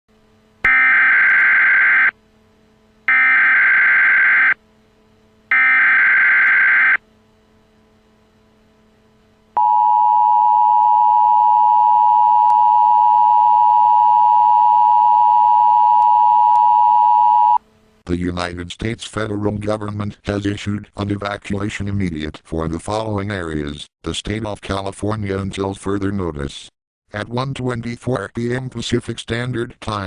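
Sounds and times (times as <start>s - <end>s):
digital data tone bursts: 0.7s - 2.1s, 3.1s - 4.6s, 5.5s - 7.0s
two-tone attention signal: 0.7s - 2.1s, 3.1s - 4.6s, 5.5s - 7.0s.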